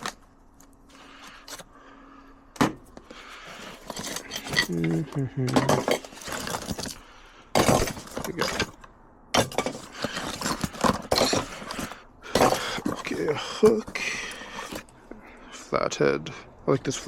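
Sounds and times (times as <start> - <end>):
metal tools clinking in a bag: 3.4 - 7.0, 7.6 - 13.3.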